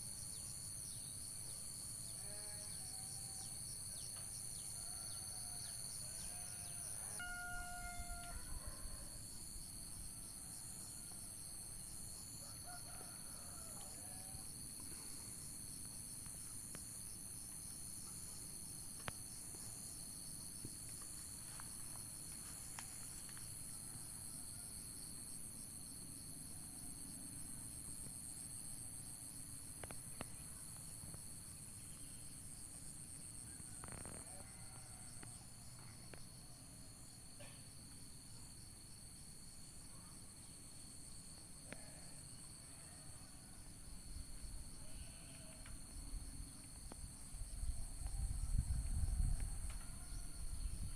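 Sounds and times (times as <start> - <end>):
insect chorus trilling: 0.2 - 37.2, 39.9 - 50.9.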